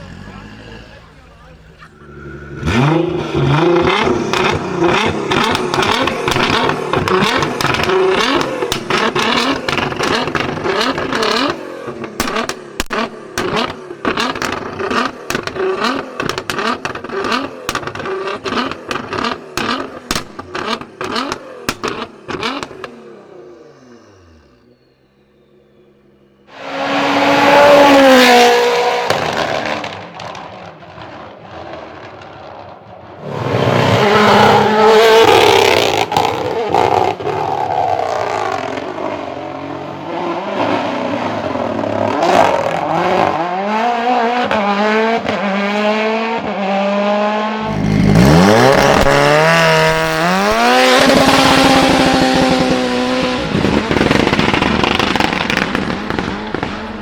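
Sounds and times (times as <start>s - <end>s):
race car engine revving: 0.0s - 57.0s
exhaust pops and bangs: 3.6s - 22.9s, 47.7s - 57.0s.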